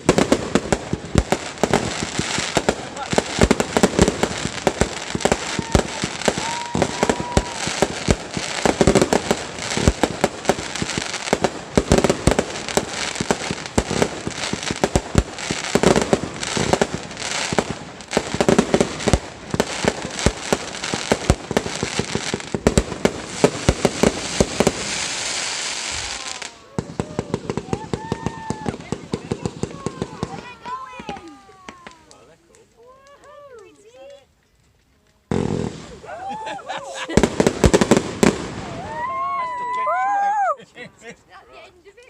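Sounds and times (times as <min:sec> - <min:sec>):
fireworks hiss: 0:00.0 - 0:32.0, 0:35.3 - 0:36.1
fireworks crackling and banging: 0:00.0 - 0:42.0
firework whistling tone: 0:04.7 - 0:08.7, 0:23.3 - 0:30.4.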